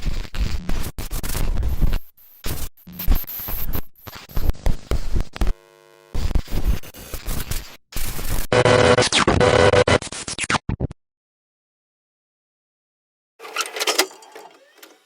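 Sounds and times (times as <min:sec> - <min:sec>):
tape hiss and static: 0:00.3 - 0:07.2
scratchy glitches: 0:08.5 - 0:10.1.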